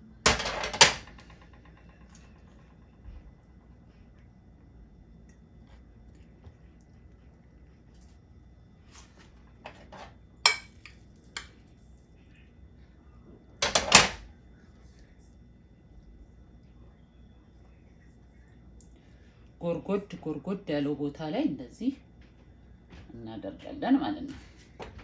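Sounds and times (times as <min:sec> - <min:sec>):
utensils clinking against pot: 0:09.7 - 0:11.5.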